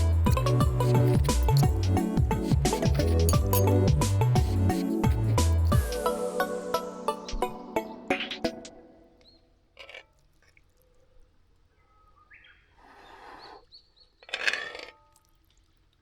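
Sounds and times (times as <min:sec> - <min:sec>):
background music: 0:00.0 - 0:09.2.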